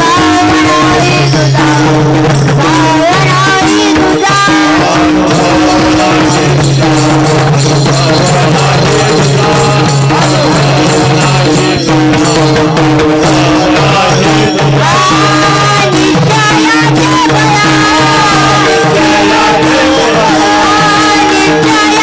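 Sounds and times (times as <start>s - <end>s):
jingling rattle percussion: 0.0s - 22.0s
person singing: 0.0s - 22.0s
held drone notes: 3.7s - 22.0s.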